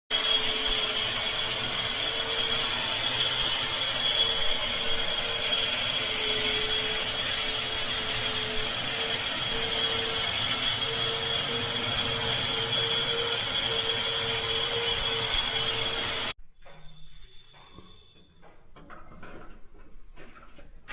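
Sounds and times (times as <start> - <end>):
power tool grinding: 0.1 - 16.4.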